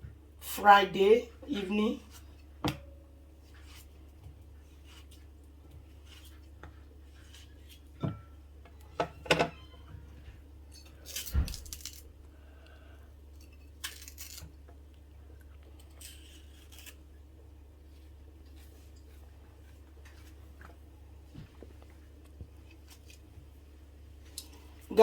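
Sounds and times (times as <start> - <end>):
steady low hum: 0.0 - 25.0
dishes clinking and knocking: 8.9 - 9.9.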